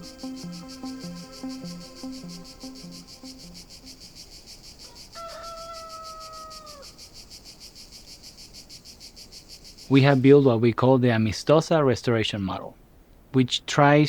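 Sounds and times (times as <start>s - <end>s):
soft low music notes: 0.0s - 4.2s
insects trilling: 0.0s - 10.3s.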